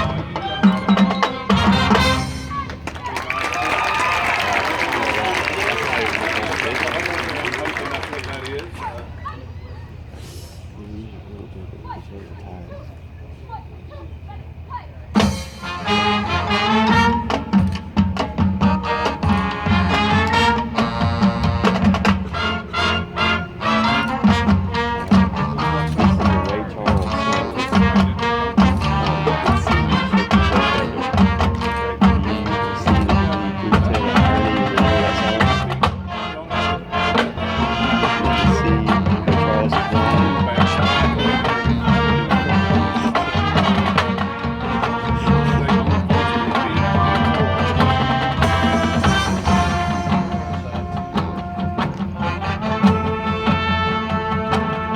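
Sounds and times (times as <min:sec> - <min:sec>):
marching band playing: 0:00.0 - 0:12.0, 0:13.6 - 0:54.9
steady drum beat: 0:15.2 - 0:54.9.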